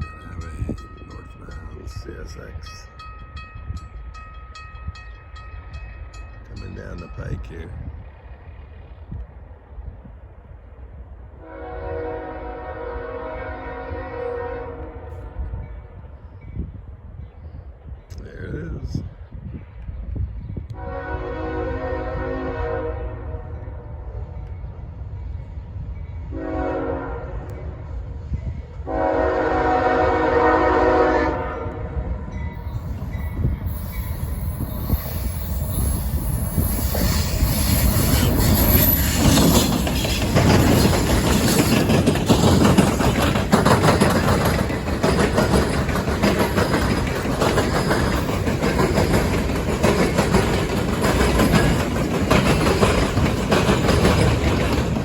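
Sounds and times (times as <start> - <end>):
train rumbling past: 0.0 - 55.0
train air horn: 11.4 - 15.4, 20.8 - 24.2, 26.3 - 27.6, 28.8 - 32.0
wheels clattering over rail joints: 32.5 - 55.0.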